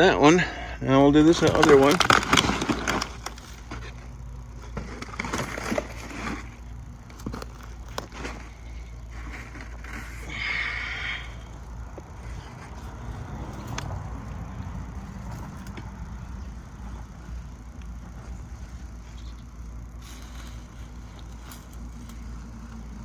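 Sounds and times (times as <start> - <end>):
steady low rumble: 0.0 - 23.0
digging scrapes in soil: 7.3 - 11.4.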